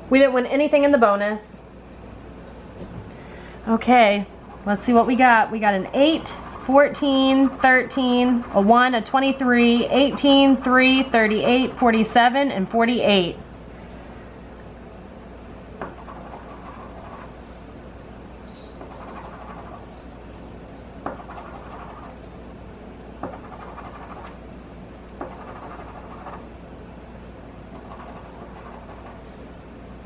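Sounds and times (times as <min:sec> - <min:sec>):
lottery ticket being scratched: 0:04.4 - 0:12.1, 0:15.8 - 0:17.4, 0:18.8 - 0:20.0, 0:21.1 - 0:22.3, 0:23.2 - 0:24.4, 0:25.2 - 0:26.4, 0:27.7 - 0:29.2.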